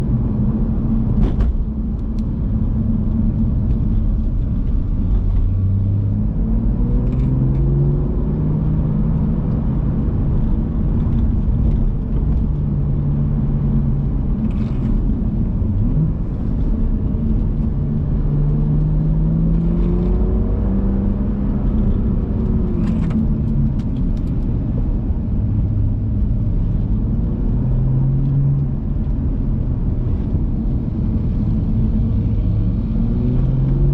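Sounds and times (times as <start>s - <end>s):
car engine accelerating: 0.1s - 33.9s.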